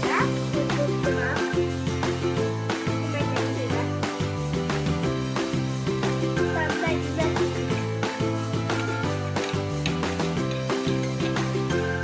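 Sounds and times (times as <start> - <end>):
background music with beat: 0.0 - 12.0.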